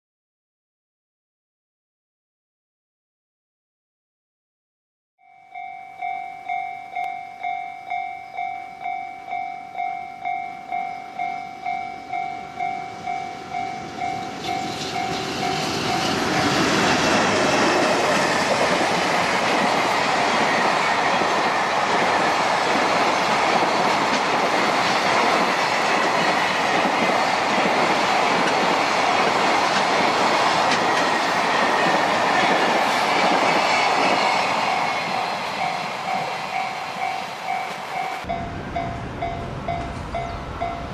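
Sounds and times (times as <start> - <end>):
freight train wheels clacking on rails: 12.1 - 40.9
level crossing alarm dinging: 35.6 - 40.9.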